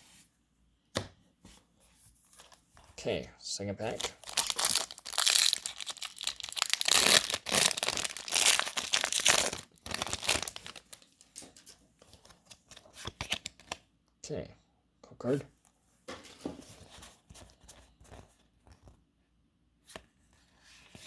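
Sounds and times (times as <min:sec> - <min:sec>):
foil wrapper tearing and crinkling: 0:04.0 - 0:11.4.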